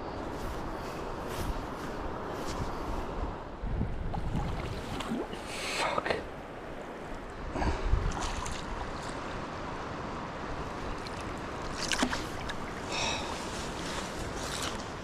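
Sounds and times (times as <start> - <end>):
river water rushing: 4.4 - 15.0.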